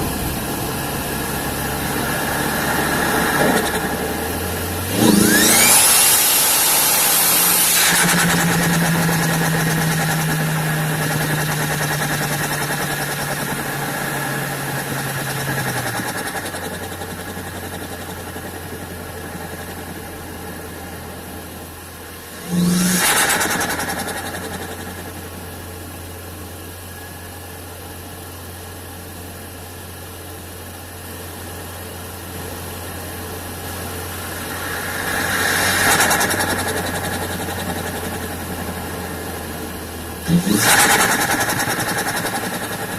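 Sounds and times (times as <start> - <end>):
rush of intake air: 0.0 - 15.6, 34.1 - 38.8
car engine idling: 0.0 - 42.9.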